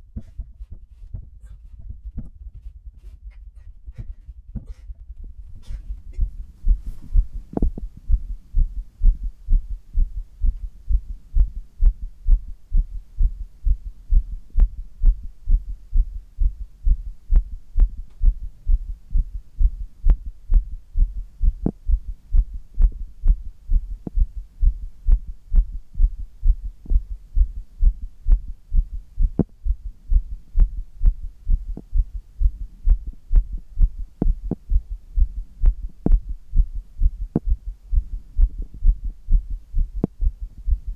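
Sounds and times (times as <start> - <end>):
heartbeat thumping: 0.0 - 40.9.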